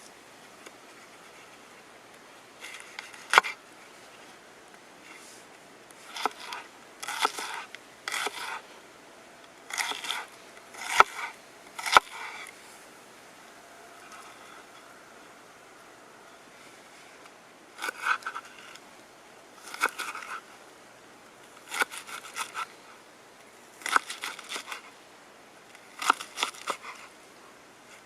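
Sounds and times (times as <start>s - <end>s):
knife slicing vegetables: 6.0s - 8.6s, 9.7s - 12.6s, 19.6s - 20.4s, 21.6s - 22.7s, 23.8s - 24.8s, 26.0s - 27.0s.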